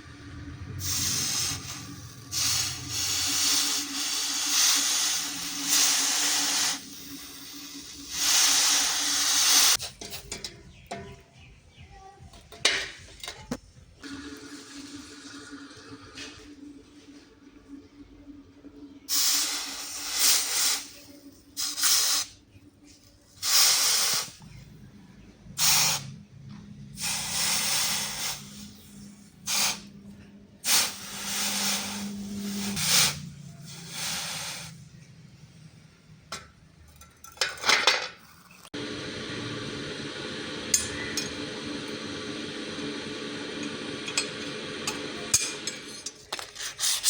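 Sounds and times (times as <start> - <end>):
hot steel hissing in quench: 0.8 - 9.9, 19.1 - 22.4, 23.4 - 24.6, 25.6 - 26.2, 27.0 - 30.0, 30.6 - 35.0.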